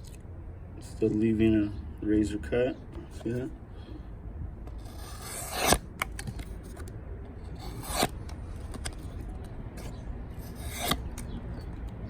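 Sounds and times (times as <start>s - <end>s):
knife slicing cardboard: 4.8s - 5.9s, 7.5s - 8.2s, 9.8s - 11.1s.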